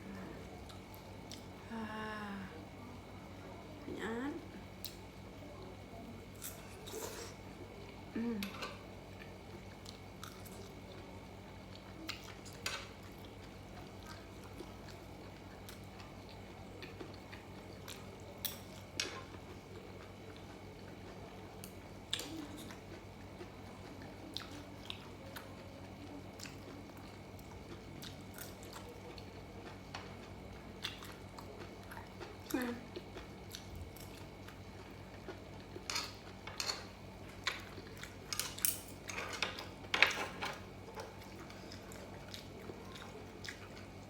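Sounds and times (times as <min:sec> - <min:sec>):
steady low hum: 0:00.0 - 0:44.0
person chewing: 0:26.3 - 0:36.4.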